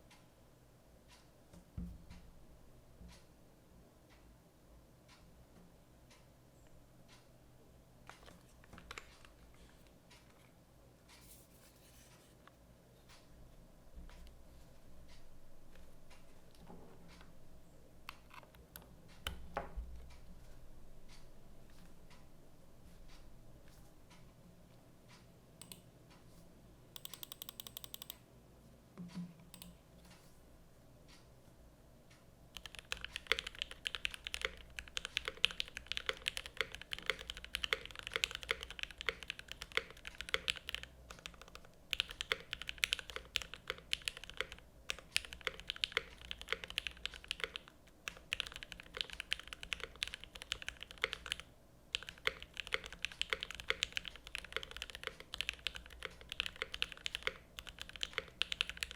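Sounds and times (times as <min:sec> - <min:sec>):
mechanical keyboard typing: 0:27.0 - 0:28.2, 0:32.6 - 0:58.9.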